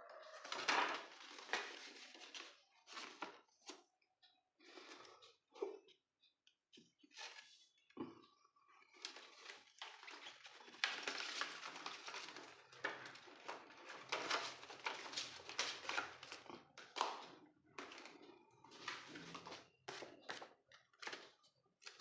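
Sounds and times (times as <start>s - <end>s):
packaging rustling and crinkling: 0.3s - 3.4s, 9.0s - 22.0s.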